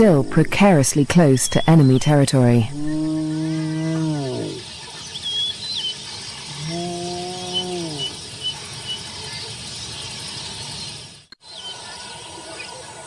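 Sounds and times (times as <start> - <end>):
crickets chirping: 0.0 - 12.7
thin bird chirps: 3.8 - 12.8
hyena call: 6.5 - 8.2.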